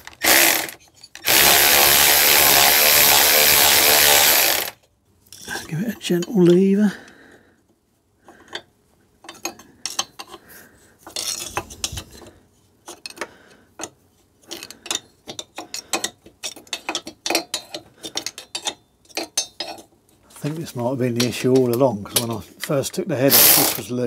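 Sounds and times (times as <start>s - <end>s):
metal clicks clinks and scrapes: 11.0s - 20.5s.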